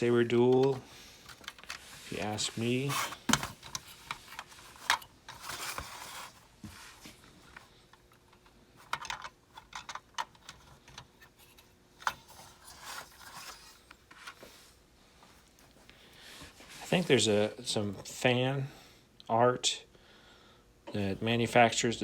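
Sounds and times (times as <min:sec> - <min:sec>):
soft rubbing and scraping: 0:00.3 - 0:07.6, 0:11.4 - 0:15.4, 0:16.3 - 0:18.2.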